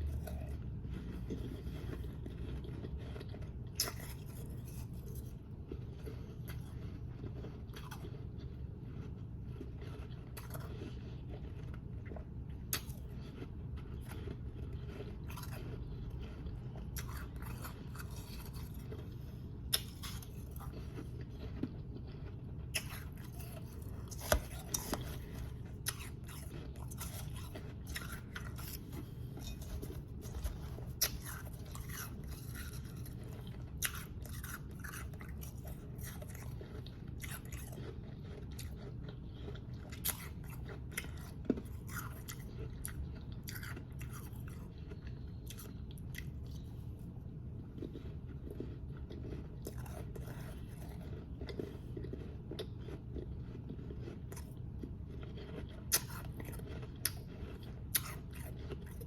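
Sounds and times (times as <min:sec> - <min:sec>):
chewing crunchy ice: 0:00.0 - 0:59.0
steady low hum: 0:00.0 - 0:59.0.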